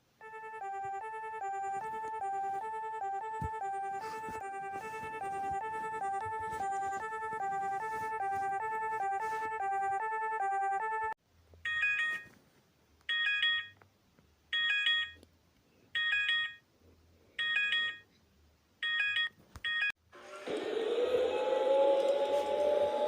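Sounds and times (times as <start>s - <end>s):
high beeping alert chord: 0.2s - 11.1s
two-tone warbling alarm: 0.2s - 11.1s.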